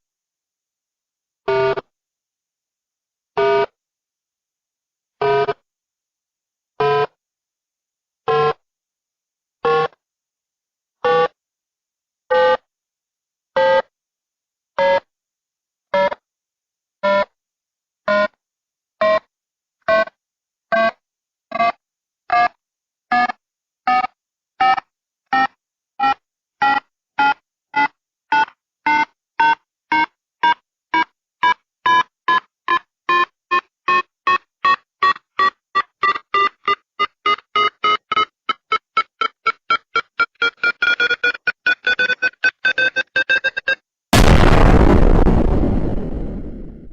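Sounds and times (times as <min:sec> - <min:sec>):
countdown beeps: 0:31.4 - 0:43.8.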